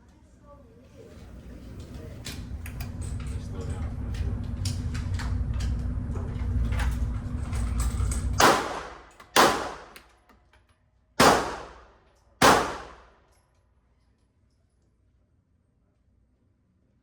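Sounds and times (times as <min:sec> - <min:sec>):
low rumble: 0:02.0 - 0:09.8
gunshots: 0:08.4 - 0:10.0, 0:11.2 - 0:13.1.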